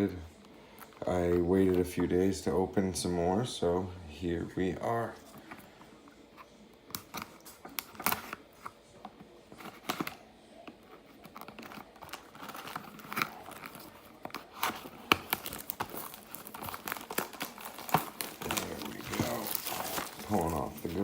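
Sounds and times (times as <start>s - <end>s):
plastic wrap crinkling: 10.9s - 21.0s.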